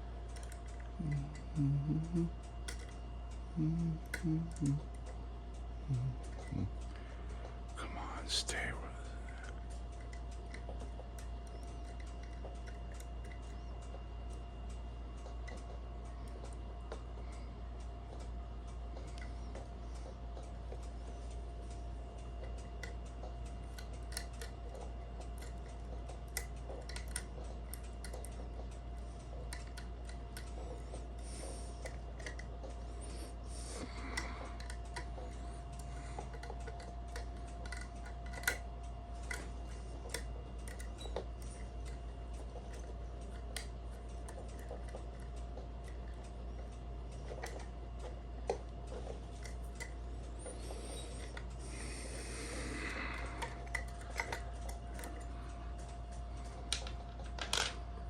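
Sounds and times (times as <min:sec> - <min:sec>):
steady low hum: 0:00.0 - 0:58.0
lock picks clicking and scraping: 0:23.6 - 0:28.4, 0:35.8 - 0:42.0.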